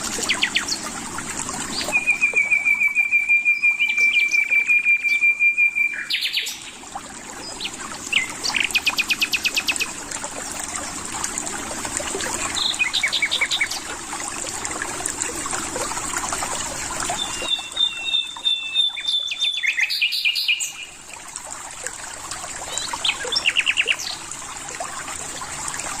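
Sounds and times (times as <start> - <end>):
songbirds singing and calling: 0.0 - 0.9, 1.6 - 10.0, 12.4 - 13.9, 17.0 - 21.1, 22.6 - 24.3.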